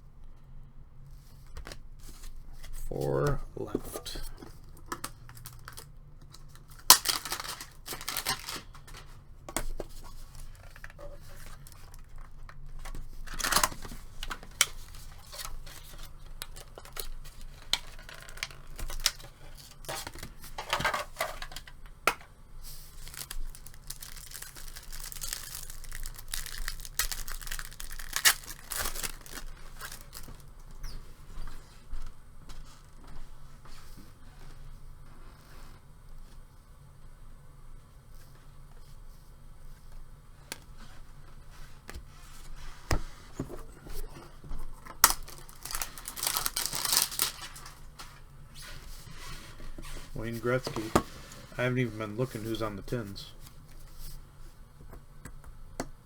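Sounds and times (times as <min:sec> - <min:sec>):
cards being handled: 0:01.2 - 0:31.0, 0:44.7 - 0:54.2
wrapper tearing and crinkling: 0:04.0 - 0:09.1, 0:13.2 - 0:21.6, 0:22.6 - 0:30.8, 0:45.0 - 0:48.0.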